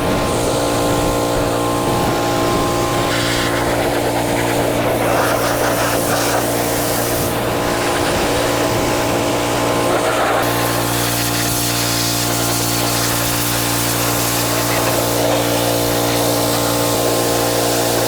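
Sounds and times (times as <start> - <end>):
pressure washer engine running: 0.0 - 18.0
water spray hissing: 9.9 - 18.0.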